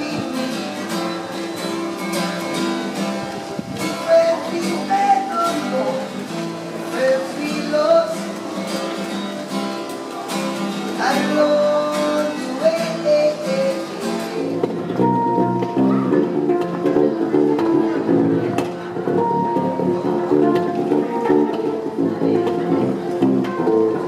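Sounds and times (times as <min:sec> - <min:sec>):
acoustic guitar strumming: 0:00.0 - 0:24.0
bending melody line: 0:14.5 - 0:24.0.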